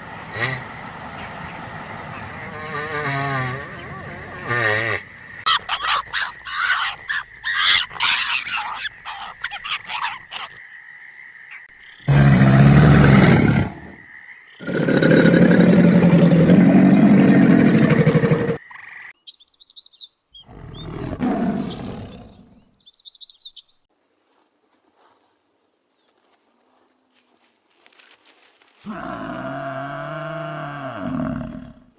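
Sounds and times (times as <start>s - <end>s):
high bird chirps: 18.7s - 21.0s, 21.6s - 23.9s
low animal call: 28.8s - 31.9s.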